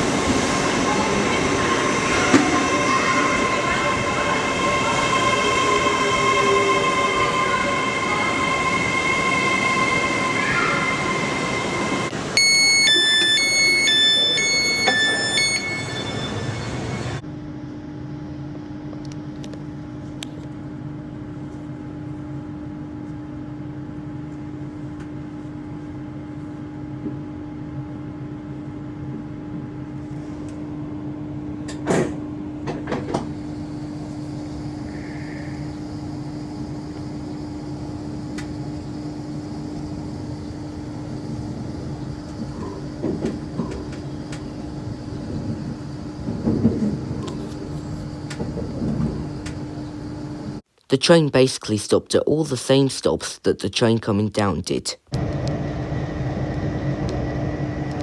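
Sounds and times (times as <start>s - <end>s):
train running rumble: 31.6s - 49.8s.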